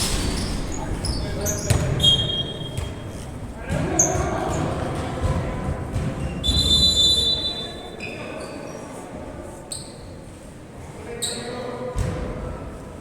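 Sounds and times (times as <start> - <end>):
murmur of voices: 0.0 - 13.0
shoe squeaks on court: 0.2 - 3.3, 6.4 - 8.9, 9.6 - 10.2, 11.2 - 11.6.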